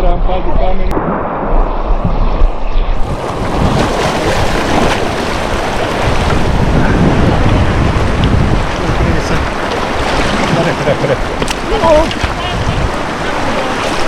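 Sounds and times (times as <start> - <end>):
wind noise on microphone: 0.0 - 14.0
river rapids rushing: 8.0 - 14.0.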